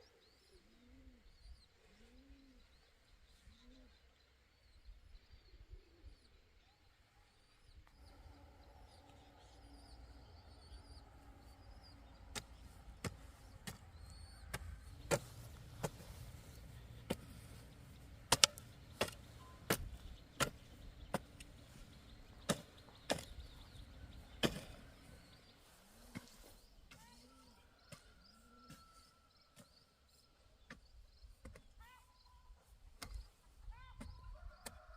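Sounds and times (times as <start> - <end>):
faint low hum: 4.6 - 25.9.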